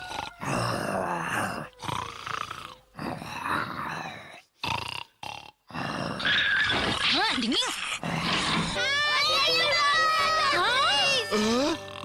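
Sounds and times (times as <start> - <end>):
cartoon dog snoring: 0.0 - 6.3, 7.9 - 8.8, 11.3 - 12.0.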